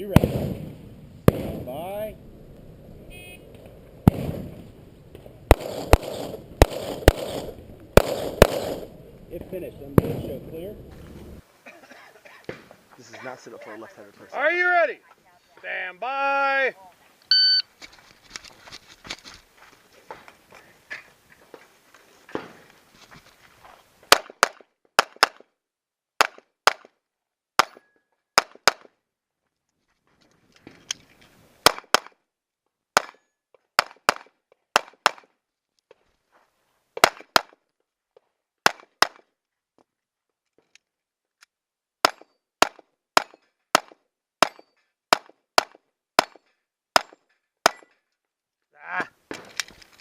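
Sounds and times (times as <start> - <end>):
gunshots: 0.0 - 2.1, 4.0 - 4.7, 5.4 - 11.0.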